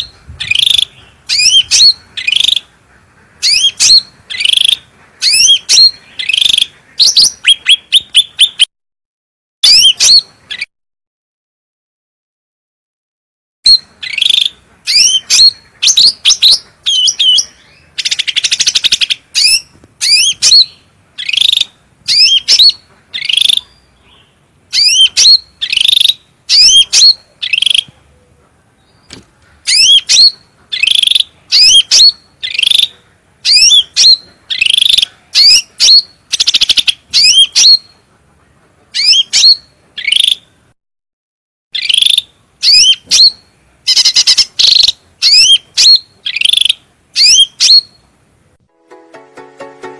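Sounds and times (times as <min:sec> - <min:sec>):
songbird whistling: 0:00.0 - 0:02.7, 0:13.7 - 0:23.8, 0:24.7 - 0:27.9, 0:29.7 - 0:32.9, 0:33.5 - 0:38.0, 0:39.0 - 0:40.4, 0:41.8 - 0:48.0.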